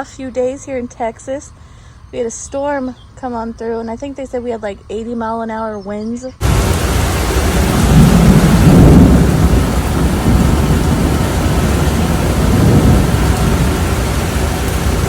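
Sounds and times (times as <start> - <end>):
wind: 0.0 - 15.0
deep low thunder rumble: 6.4 - 15.0
heavy rain: 6.4 - 15.0.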